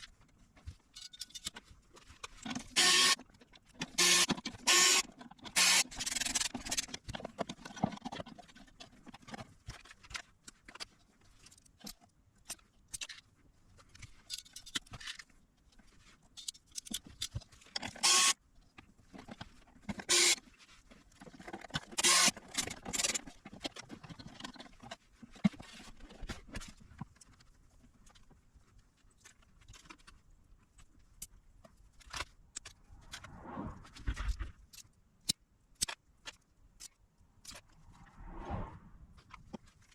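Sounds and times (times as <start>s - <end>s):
tools clicking and tapping: 0.9s - 8.6s.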